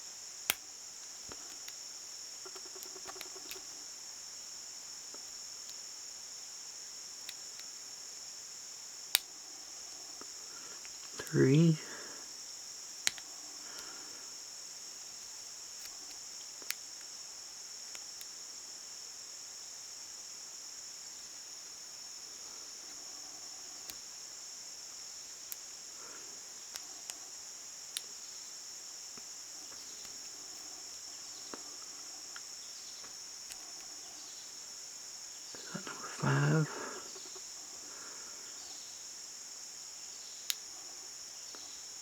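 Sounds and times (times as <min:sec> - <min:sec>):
high-pitched insect drone: 0:09.8 - 0:14.7, 0:35.3 - 0:39.0.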